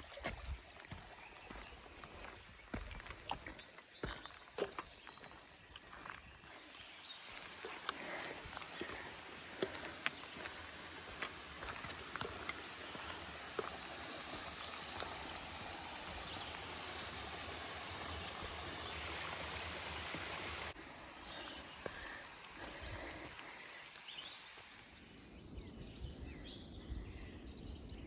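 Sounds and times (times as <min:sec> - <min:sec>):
stream water rushing: 0:00.0 - 0:02.9, 0:06.6 - 0:25.0.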